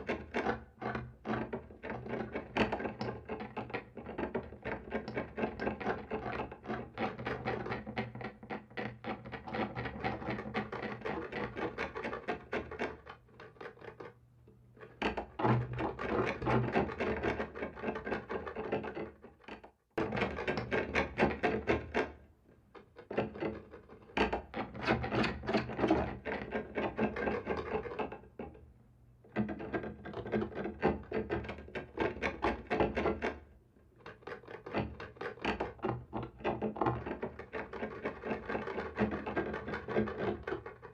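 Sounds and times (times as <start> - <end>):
scratching on wooden wall: 14.8 - 28.6, 29.3 - 40.9.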